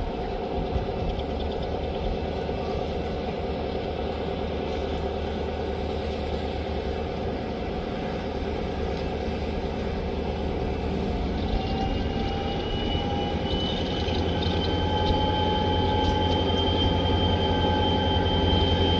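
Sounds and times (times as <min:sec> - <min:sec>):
diesel locomotive engines rumbling: 0:00.0 - 0:18.9.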